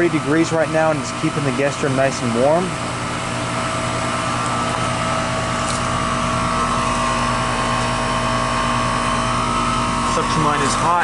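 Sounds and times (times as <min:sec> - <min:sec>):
fan noise rushing: 0:00.0 - 0:11.0
heat pump mechanical hum: 0:00.0 - 0:11.0.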